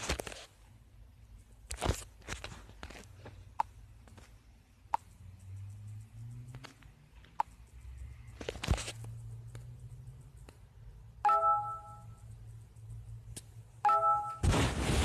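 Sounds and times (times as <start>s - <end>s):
phone notification chime: 11.2s - 12.0s, 13.8s - 14.4s.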